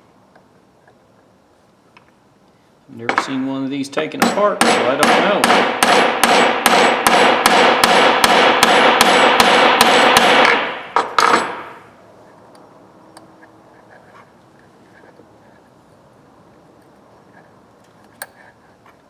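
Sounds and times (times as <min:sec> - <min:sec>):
hammer striking metal punch: 0:04.1 - 0:11.8.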